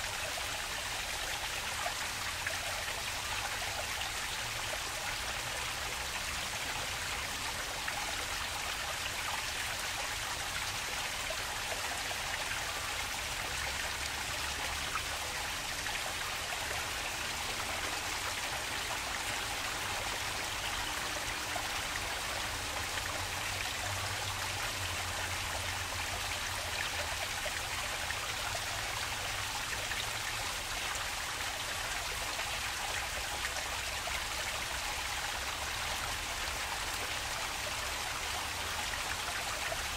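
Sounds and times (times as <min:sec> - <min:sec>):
stream water rushing: 0:00.0 - 0:39.9.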